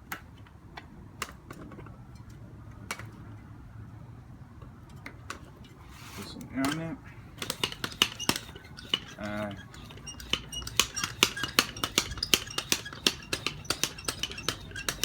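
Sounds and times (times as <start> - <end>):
bicycle pump clicking: 7.4 - 15.0.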